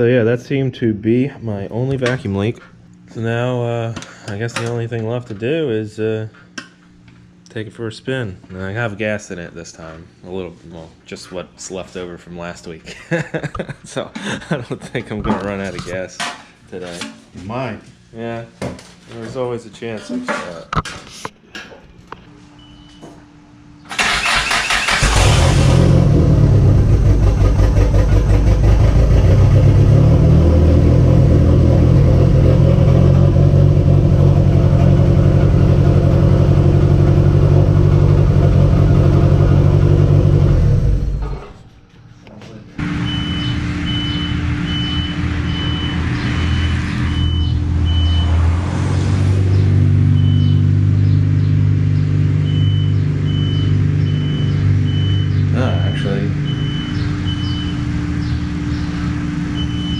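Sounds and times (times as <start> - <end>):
car engine running: 25.0 - 41.4, 42.8 - 59.9.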